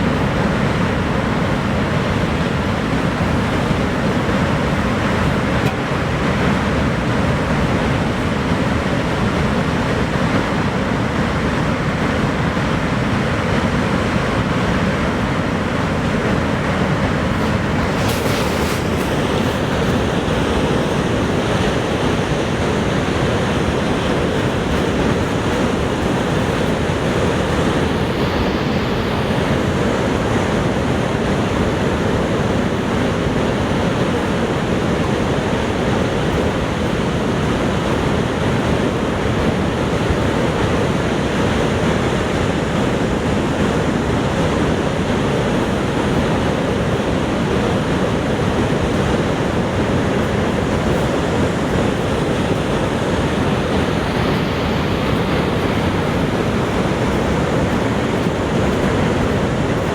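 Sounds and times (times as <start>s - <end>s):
loud rush of falling water: 0.0s - 59.9s.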